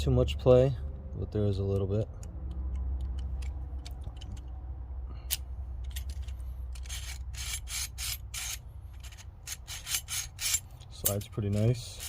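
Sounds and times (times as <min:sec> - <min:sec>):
rasping metal jaw sliding: 0:06.2 - 0:12.0.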